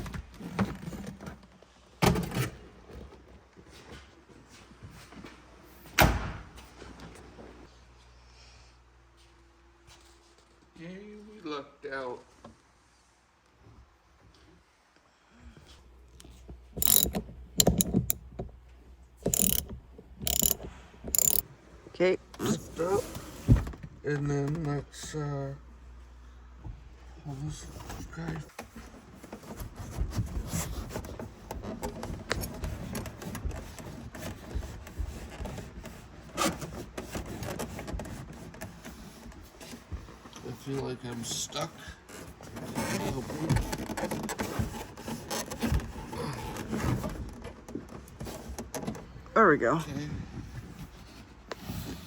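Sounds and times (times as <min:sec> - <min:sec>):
ratchet wrench clicking: 0:16.8 - 0:18.2, 0:19.3 - 0:21.4.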